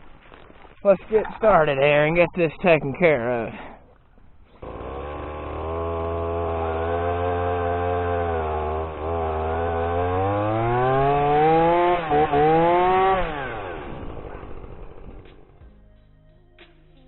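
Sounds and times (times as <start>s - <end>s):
chainsaw idling and revving: 4.2s - 15.6s.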